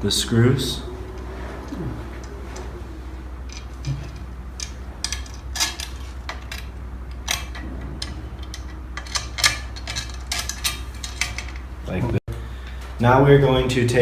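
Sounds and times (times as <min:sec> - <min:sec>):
screws and springs clinking on metal: 0:03.4 - 0:11.7.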